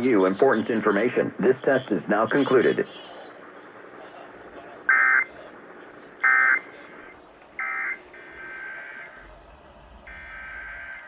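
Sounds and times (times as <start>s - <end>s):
faint data tones: 0.0s - 11.0s
two-tone digital data screeches: 7.6s - 9.3s.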